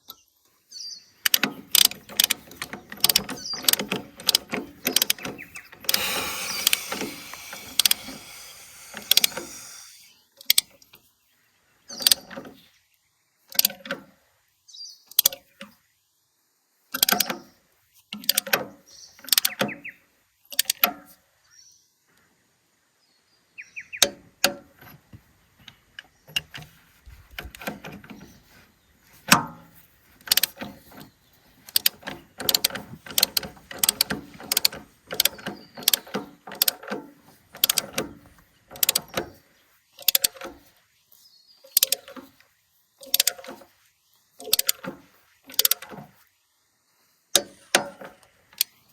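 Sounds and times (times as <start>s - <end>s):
hand ratchet clicking: 1.2s - 10.6s, 30.3s - 30.7s, 31.7s - 39.2s, 40.0s - 40.6s, 41.7s - 42.2s, 43.0s - 43.6s, 44.4s - 44.9s, 45.5s - 46.0s.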